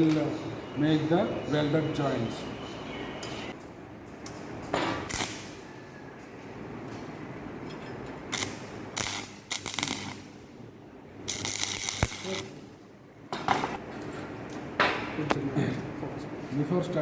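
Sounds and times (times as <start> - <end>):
arc welding crackling: 0.0 - 1.0, 5.0 - 5.7, 8.2 - 10.6, 11.2 - 12.9.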